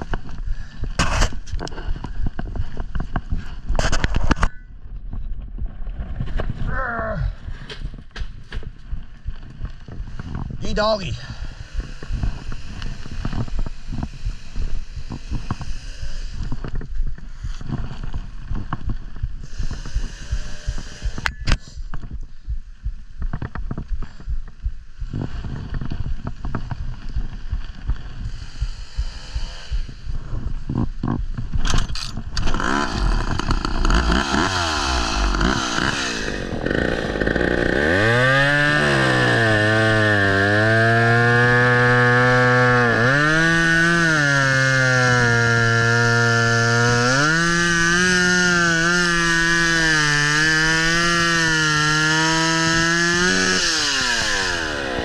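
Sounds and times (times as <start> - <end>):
chainsaw running: 11.2 - 21.3, 25.3 - 55.0.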